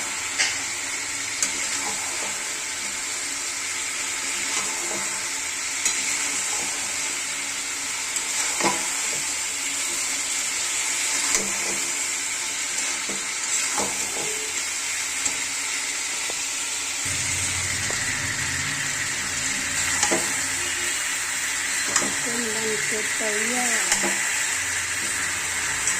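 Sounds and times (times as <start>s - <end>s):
curry sizzling in a pan: 0.0s - 25.9s
low hum: 17.1s - 21.8s.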